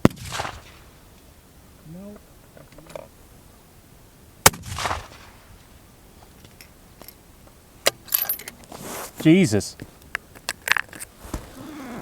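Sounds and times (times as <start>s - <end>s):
rifle shot with echo: 0.0s - 0.9s, 4.4s - 5.5s.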